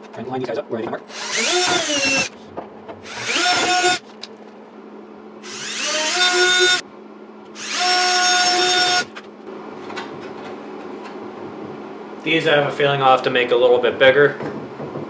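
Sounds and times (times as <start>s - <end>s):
power drill whining: 1.1s - 2.3s, 3.0s - 4.0s, 5.4s - 6.8s, 7.6s - 9.1s.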